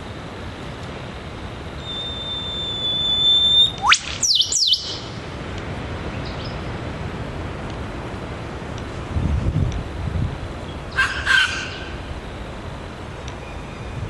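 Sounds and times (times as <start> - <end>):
bird descending notes: 1.8 - 5.1
bird whistle ending in whip-crack: 1.9 - 5.0.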